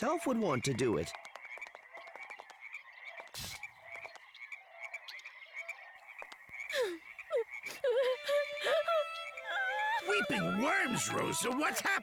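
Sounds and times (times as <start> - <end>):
cartoon frogs croaking: 0.0 - 8.0
crying sobs: 6.7 - 12.0.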